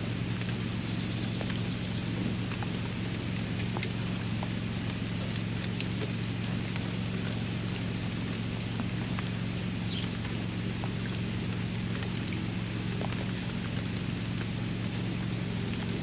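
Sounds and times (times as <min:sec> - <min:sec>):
constant low hum: 0:00.0 - 0:16.0
steady rain falling: 0:00.0 - 0:16.0.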